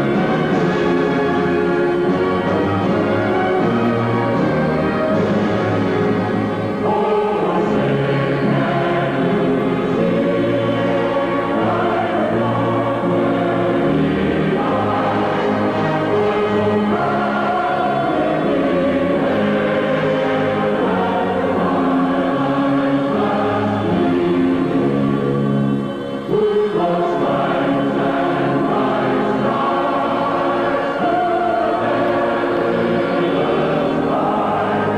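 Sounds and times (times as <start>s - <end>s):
choir singing slow anthem: 0.0s - 34.9s.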